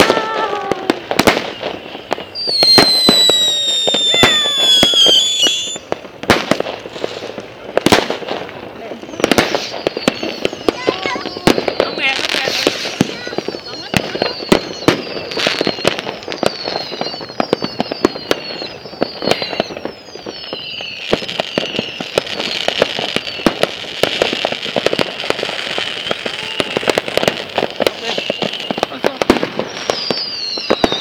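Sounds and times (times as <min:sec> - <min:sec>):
fireworks crackling pops: 0:00.0 - 0:31.0
high hissing whistle: 0:01.4 - 0:05.8, 0:09.5 - 0:23.6, 0:29.6 - 0:31.0
short falling whistles: 0:01.5 - 0:05.8, 0:13.5 - 0:23.4, 0:29.6 - 0:31.0.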